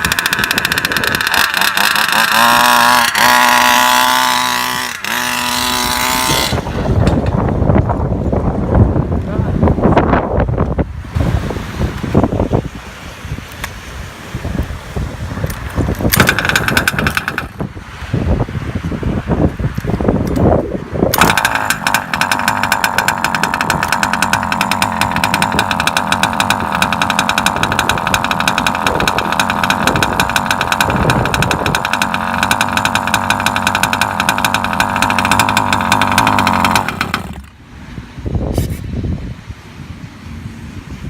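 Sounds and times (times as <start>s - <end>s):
small two-stroke engine buzzing: 0.0s - 7.4s, 16.0s - 17.7s, 21.1s - 37.6s.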